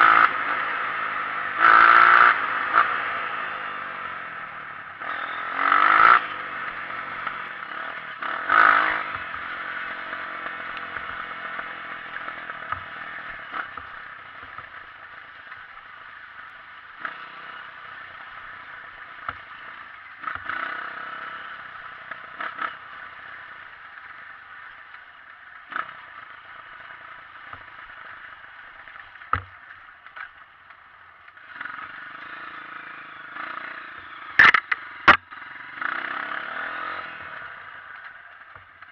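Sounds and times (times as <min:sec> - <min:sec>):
trail bike engine running: 0:00.0 - 0:38.9
knocks and clatter: 0:34.4 - 0:35.2.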